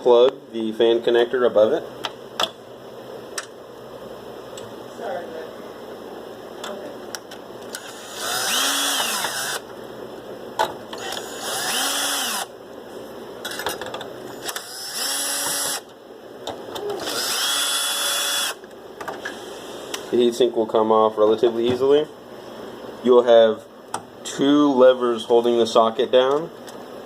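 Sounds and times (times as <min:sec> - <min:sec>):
electric screwdriver motor: 0:07.8 - 0:09.6, 0:11.0 - 0:12.5, 0:14.4 - 0:15.8, 0:17.0 - 0:18.6.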